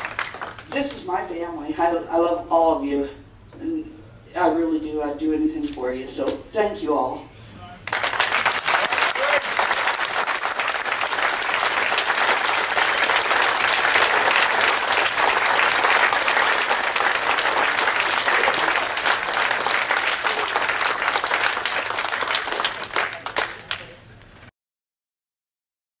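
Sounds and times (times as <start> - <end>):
audience applauding: 0.0 - 0.8, 7.8 - 24.1.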